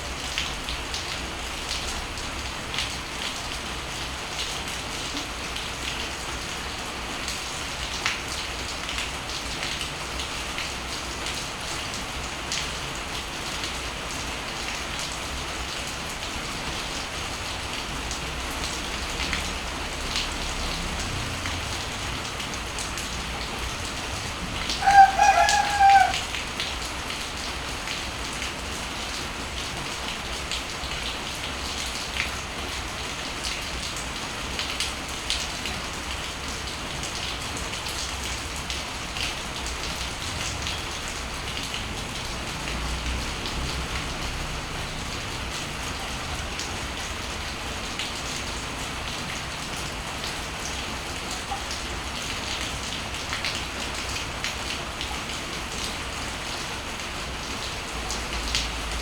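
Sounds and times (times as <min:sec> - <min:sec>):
raindrops ticking on surfaces: 0:00.0 - 0:59.0
rain hissing: 0:09.9 - 0:31.6, 0:38.9 - 0:51.2
rooster crowing: 0:24.7 - 0:26.4.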